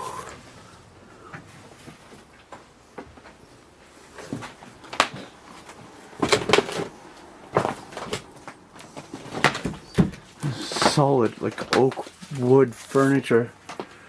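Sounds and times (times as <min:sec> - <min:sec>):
knocks and bumps on wood: 0:05.8 - 0:11.0.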